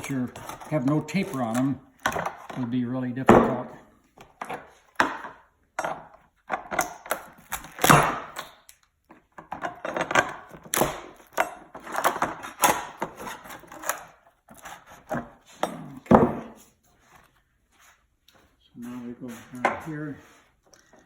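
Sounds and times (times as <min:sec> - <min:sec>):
knocks clunks and scrapes: 0:00.0 - 0:05.2, 0:18.8 - 0:21.0.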